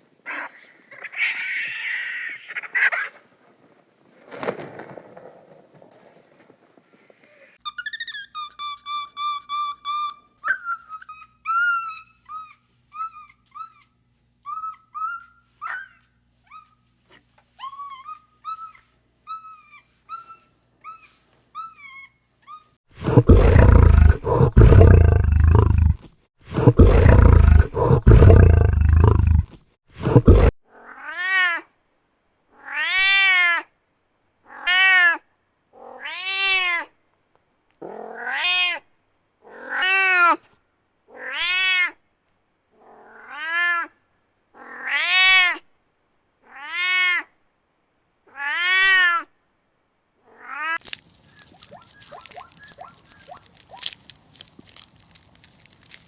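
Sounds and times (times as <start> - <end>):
big cat roaring: 23.0 - 30.5
short high chirping calls: 51.2 - 53.8.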